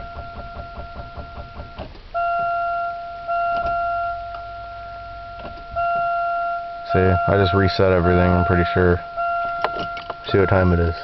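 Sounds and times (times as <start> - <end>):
car starter clicking: 0.0 - 2.6, 9.2 - 10.5
electronic warning tone: 0.0 - 11.0.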